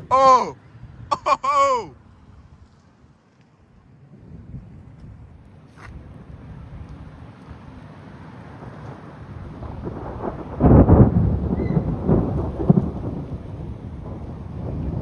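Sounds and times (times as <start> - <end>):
thunder rumble and clap: 8.4 - 15.0.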